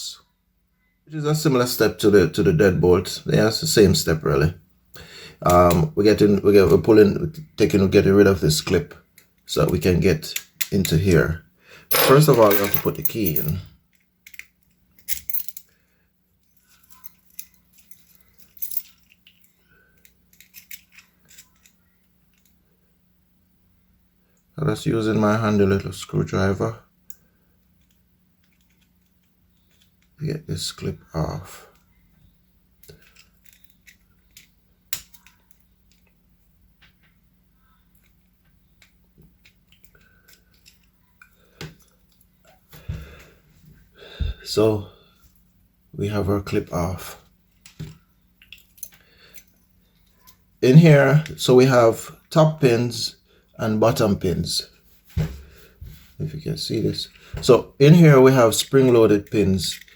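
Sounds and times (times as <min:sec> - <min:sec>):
screwdriver metal clicks and scrapes: 0:59.3 - 0:59.9.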